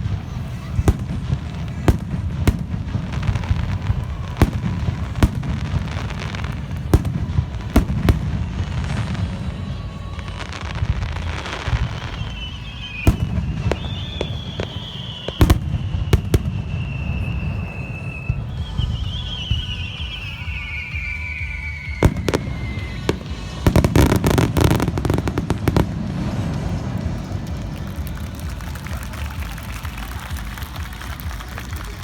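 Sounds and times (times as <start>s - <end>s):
fireworks bangs: 0.0s - 32.0s
low rumble and crackle: 22.0s - 32.0s.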